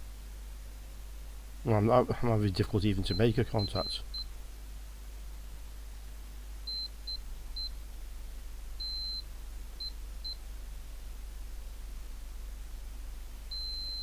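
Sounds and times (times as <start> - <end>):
high-pitched multimeter beeps: 13.5 - 14.0.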